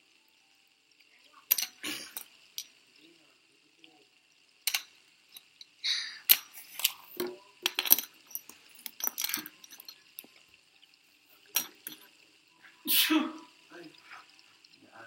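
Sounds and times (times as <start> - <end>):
fidget spinners clicking: 4.6 - 12.2.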